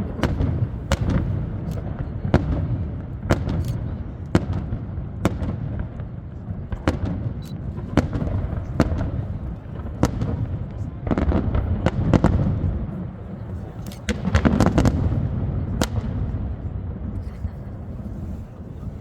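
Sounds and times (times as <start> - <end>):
fireworks bangs: 0.0 - 17.2
low rumble of fireworks bursts: 0.0 - 19.0.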